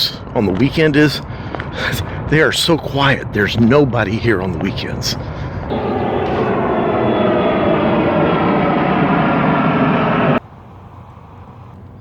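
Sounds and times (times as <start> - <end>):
aircraft engines roaring: 5.7 - 10.4.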